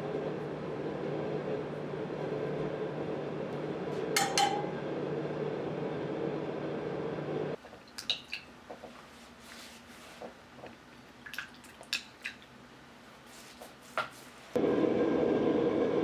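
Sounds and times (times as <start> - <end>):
steady machine hum: 0.0 - 7.6, 14.6 - 16.0.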